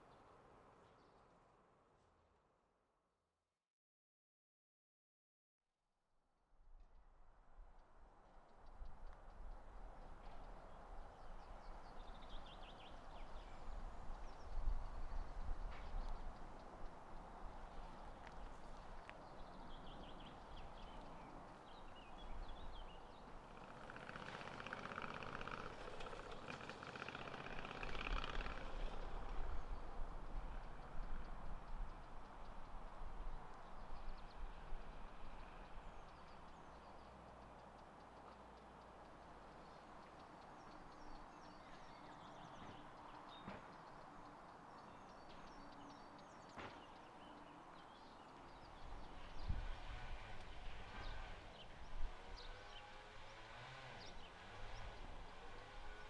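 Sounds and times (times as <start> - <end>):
small birds chirping: 28.7 - 56.0
wind on microphone rumble: 48.7 - 52.5.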